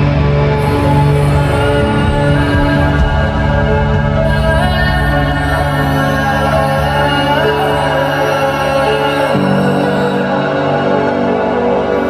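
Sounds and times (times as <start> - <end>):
instrumental sustained chords: 0.0 - 12.0.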